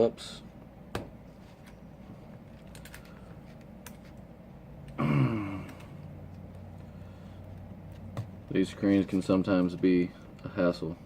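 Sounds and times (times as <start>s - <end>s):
man grunting: 5.0s - 5.9s.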